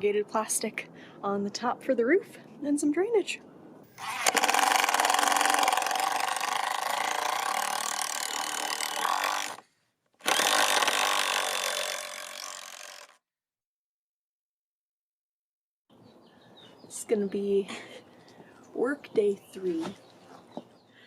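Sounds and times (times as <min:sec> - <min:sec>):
power saw cutting wood: 0:03.9 - 0:09.6, 0:10.2 - 0:13.2.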